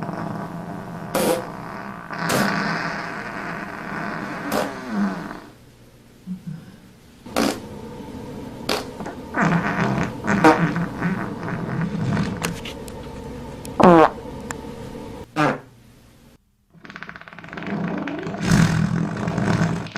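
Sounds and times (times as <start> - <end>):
fart sound effects: 0.0 - 5.6, 7.3 - 7.8, 8.6 - 12.8, 13.8 - 14.2, 15.3 - 15.7, 16.8 - 19.9.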